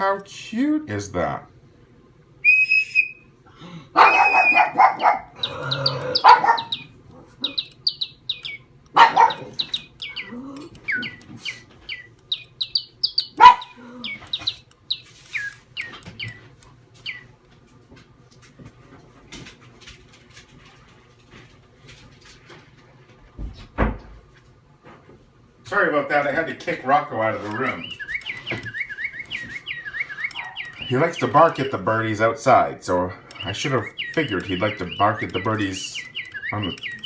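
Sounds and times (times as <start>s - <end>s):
toy bird chirping: 2.4s - 3.2s, 4.0s - 17.3s, 27.4s - 31.8s, 33.3s - 37.0s
dog barking: 4.0s - 5.4s, 6.1s - 6.8s, 8.9s - 9.7s, 13.3s - 14.0s, 30.3s - 30.8s.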